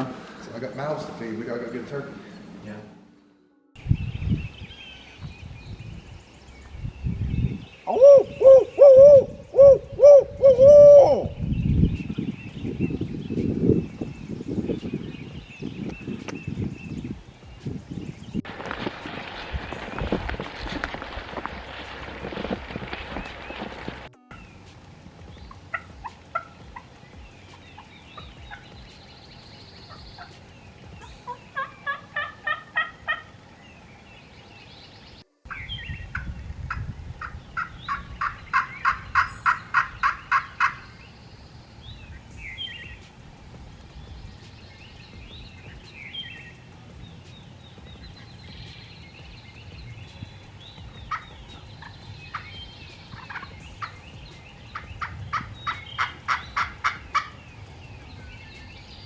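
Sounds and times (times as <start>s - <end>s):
small birds chirping: 3.8s - 59.0s
turkey calling: 7.8s - 11.4s, 18.7s - 33.4s, 35.5s - 41.0s, 48.0s - 58.7s.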